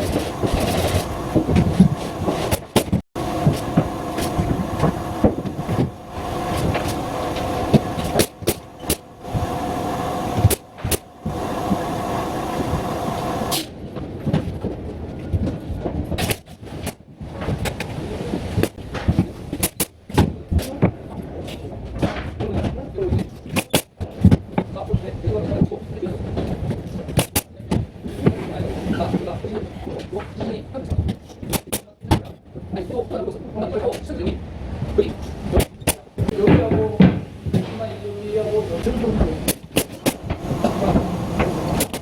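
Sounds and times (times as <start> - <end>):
power tool humming: 0.0 - 13.7, 39.9 - 42.0
knocks and clatter of work: 35.5 - 38.0.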